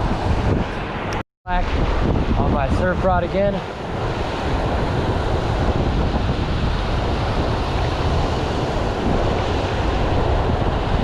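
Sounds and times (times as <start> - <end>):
surf washing onto beach: 0.0 - 11.0
wind buffeting microphone: 0.0 - 11.0.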